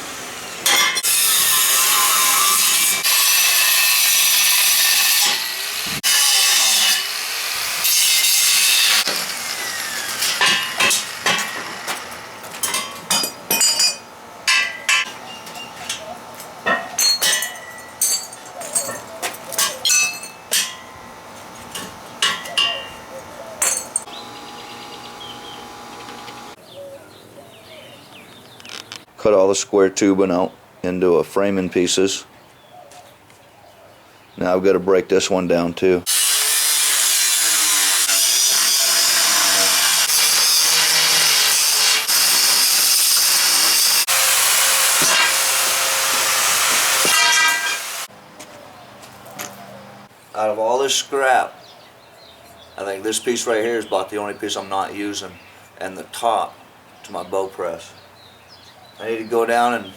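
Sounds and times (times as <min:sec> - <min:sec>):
power tool cutting steel tubing: 0:00.0 - 0:12.8, 0:20.5 - 0:26.6, 0:36.1 - 0:48.1
scrap steel clanking: 0:10.0 - 0:23.0, 0:46.1 - 0:47.9.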